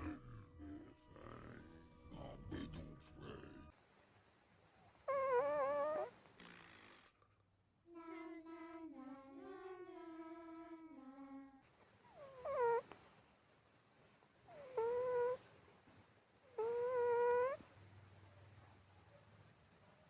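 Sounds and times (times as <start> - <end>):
cat moaning: 5.0 - 6.2, 12.1 - 13.0, 14.5 - 15.6, 16.4 - 17.7
cat crying: 5.1 - 6.1, 12.1 - 12.9, 14.5 - 15.5, 16.5 - 17.7.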